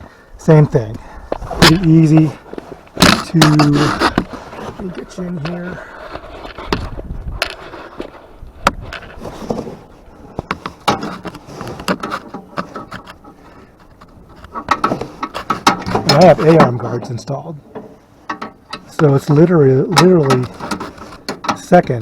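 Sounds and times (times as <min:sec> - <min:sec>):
metal clicks and knocks: 0:10.4 - 0:22.0.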